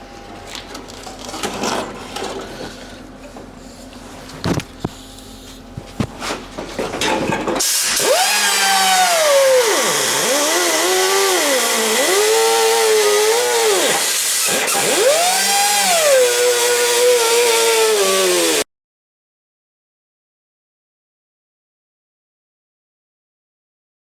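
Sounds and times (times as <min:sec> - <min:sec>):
power cutting tool cutting steel: 0:07.6 - 0:18.7.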